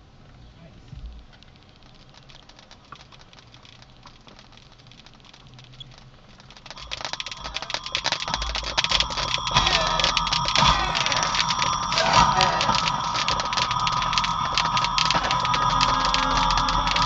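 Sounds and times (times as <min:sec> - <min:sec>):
speaker crackling and popping: 0:00.2 - 0:17.0
program audio through speakers: 0:05.3 - 0:17.0.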